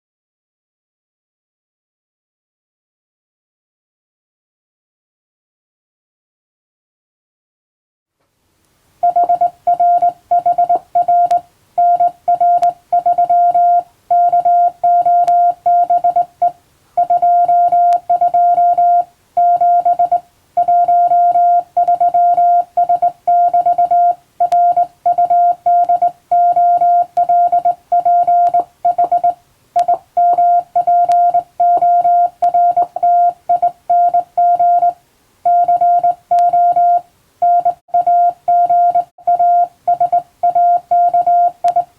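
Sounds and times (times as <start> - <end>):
morse code tone: 9.0 - 41.9.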